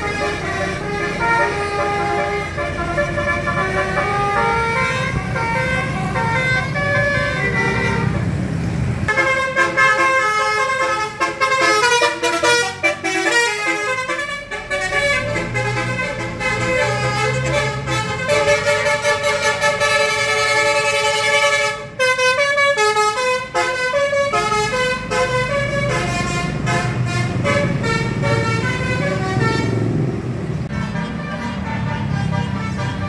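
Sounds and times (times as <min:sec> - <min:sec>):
multi-tone air horn tune: 0:00.0 - 0:08.2, 0:09.1 - 0:29.8, 0:30.7 - 0:33.0
bus engine running: 0:00.0 - 0:33.0
road noise: 0:00.0 - 0:33.0.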